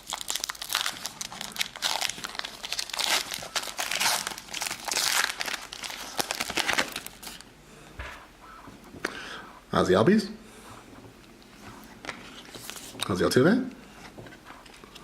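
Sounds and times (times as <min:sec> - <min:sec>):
foil wrapper crinkling: 0:00.0 - 0:07.4.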